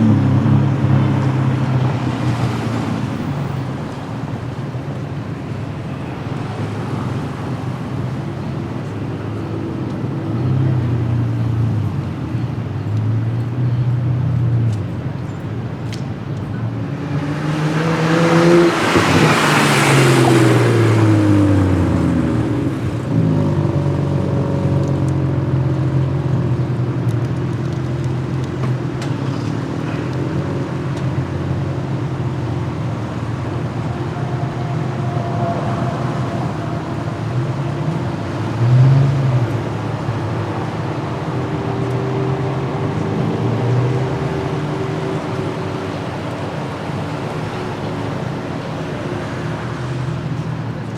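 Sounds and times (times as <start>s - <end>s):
car driving past: 0.0s - 13.4s, 16.5s - 24.8s, 28.1s - 50.9s
car engine idling and revving: 0.0s - 50.9s.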